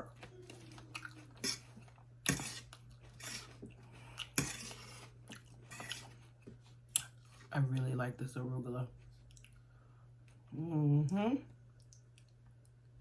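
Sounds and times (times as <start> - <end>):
quiet chewing: 0.0 - 7.5, 9.2 - 10.5, 11.7 - 12.9
steady low hum: 0.0 - 13.0.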